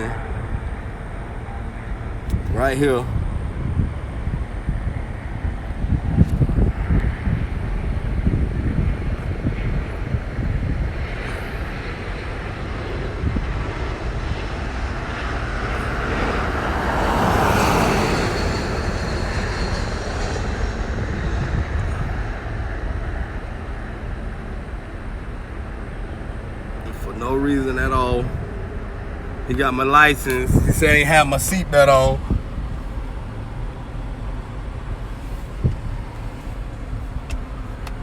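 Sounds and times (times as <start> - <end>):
traffic rumble: 0.0 - 38.0
vehicle passing close by: 6.4 - 23.3.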